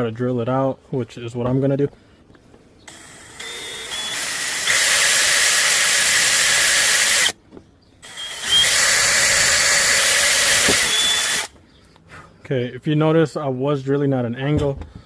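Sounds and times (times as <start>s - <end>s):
power drill boring holes: 2.9s - 7.4s, 8.0s - 11.5s.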